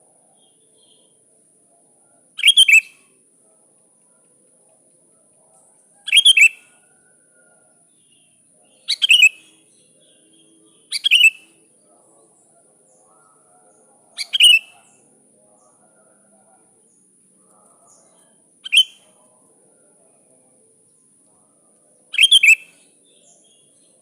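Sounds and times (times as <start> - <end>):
bird calling: 14.2 - 15.0, 18.6 - 19.1, 22.2 - 22.8.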